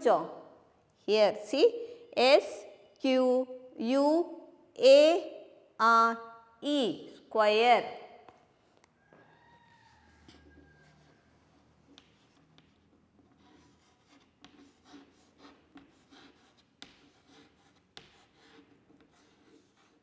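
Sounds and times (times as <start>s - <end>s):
pen scratching on paper: 10.2s - 20.0s.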